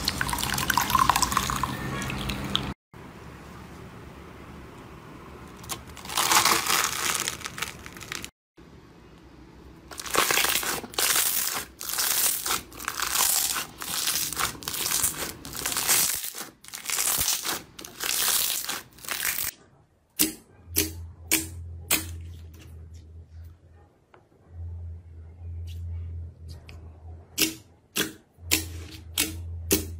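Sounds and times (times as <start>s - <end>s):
slime squeezed crackling: 5.6s - 8.3s, 9.9s - 19.5s.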